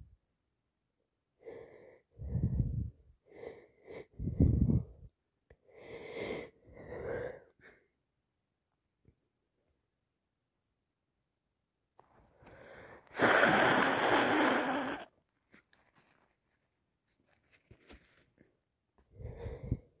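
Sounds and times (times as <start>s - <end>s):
person sneezing: 13.1s - 15.1s.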